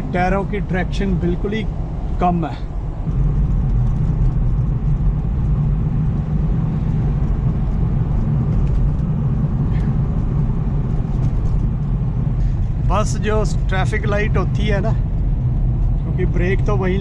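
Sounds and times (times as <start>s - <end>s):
car engine and tyres rumbling: 0.0s - 17.0s.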